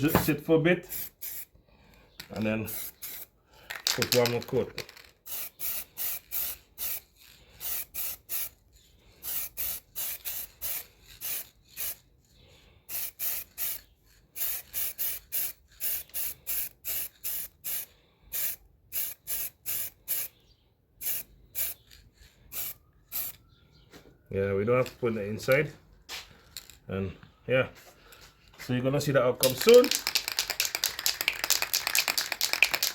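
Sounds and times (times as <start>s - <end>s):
aerosol spray can hissing: 0.9s - 1.5s, 2.7s - 3.3s, 5.3s - 8.6s, 9.2s - 12.1s, 12.9s - 20.3s, 21.0s - 21.8s, 22.5s - 23.4s.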